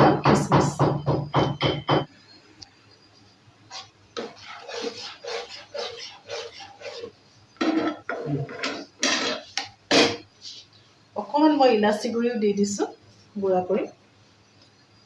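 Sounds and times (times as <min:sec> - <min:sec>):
utensil scraping a pan: 0:03.7 - 0:10.2.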